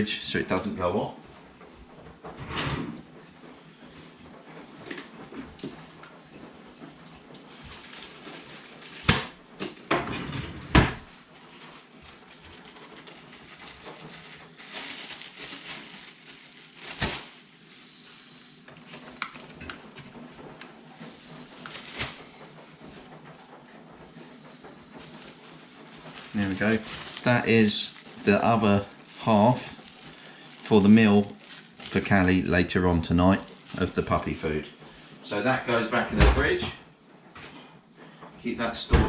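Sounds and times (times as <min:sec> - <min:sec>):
plastic bag crinkling: 0:07.4 - 0:09.9, 0:11.0 - 0:18.3, 0:21.0 - 0:23.0, 0:25.0 - 0:35.1.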